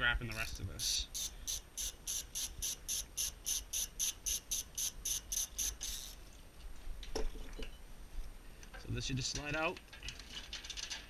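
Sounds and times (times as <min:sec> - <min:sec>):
short high-pitched chirps: 0:00.8 - 0:06.2.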